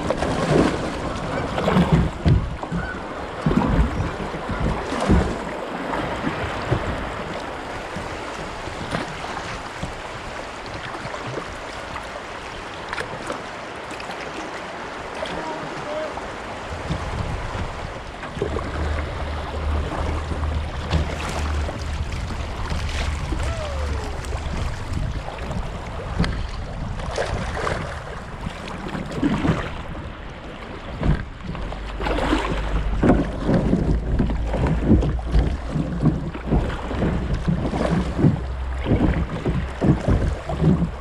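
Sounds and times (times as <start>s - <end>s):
paddle strokes splashing water: 0.0s - 41.0s
steady low rumble: 16.8s - 28.8s, 29.6s - 41.0s.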